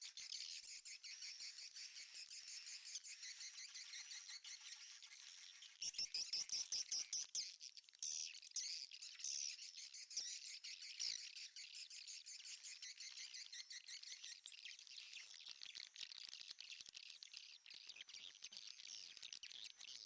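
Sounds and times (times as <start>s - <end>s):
birds twittering: 0.0s - 7.5s.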